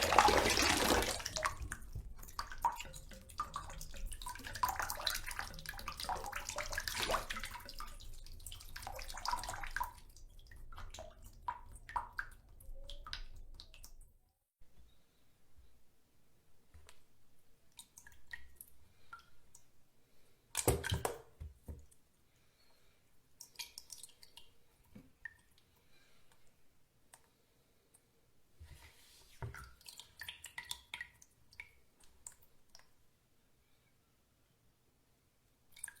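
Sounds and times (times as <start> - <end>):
water dripping: 0.0 - 14.1, 23.4 - 25.7, 35.7 - 36.0.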